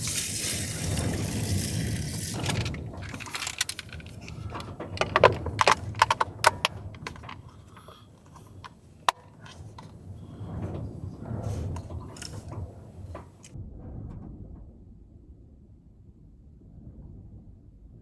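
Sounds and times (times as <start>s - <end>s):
hiss: 0.0s - 3.6s
small objects clicking and clinking: 0.0s - 13.6s.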